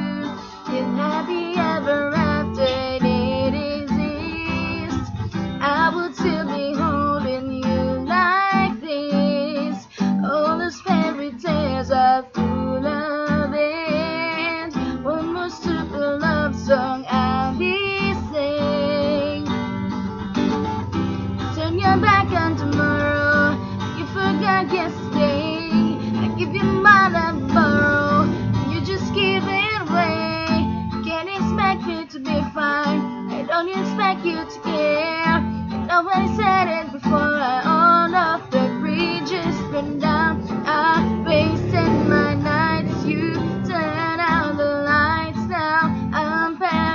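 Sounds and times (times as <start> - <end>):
person singing: 0.0 - 19.8, 20.4 - 46.9
strummed acoustic guitar: 0.0 - 46.9.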